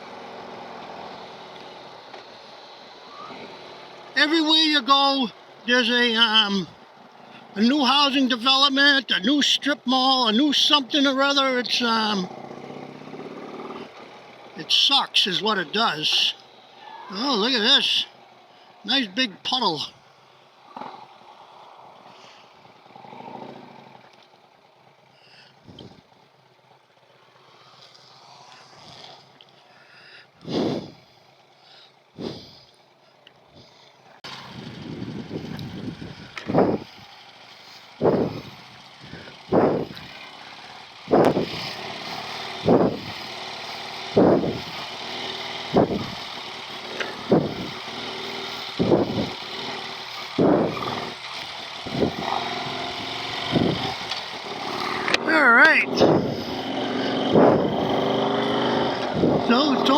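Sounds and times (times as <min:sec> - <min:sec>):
road noise: 0:00.0 - 0:59.9
wind noise: 0:34.5 - 0:37.1, 0:38.0 - 0:38.5, 0:39.5 - 0:40.1, 0:41.1 - 0:41.7, 0:42.6 - 0:43.2, 0:44.2 - 0:44.7, 0:45.7 - 0:46.2, 0:47.3 - 0:47.7, 0:48.8 - 0:49.4, 0:50.4 - 0:51.0, 0:51.9 - 0:52.3, 0:53.4 - 0:54.1, 0:55.9 - 0:56.5, 0:57.3 - 0:57.9, 0:59.1 - 0:59.5.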